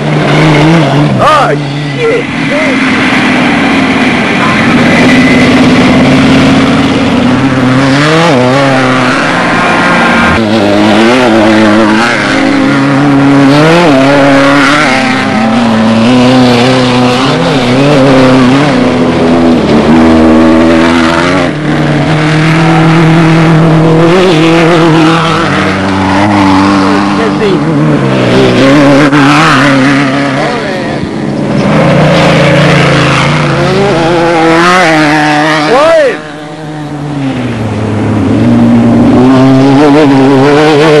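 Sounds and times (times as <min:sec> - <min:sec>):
steady rush of noise: 0:00.0 - 0:41.0
vehicle engine revving: 0:00.0 - 0:41.0.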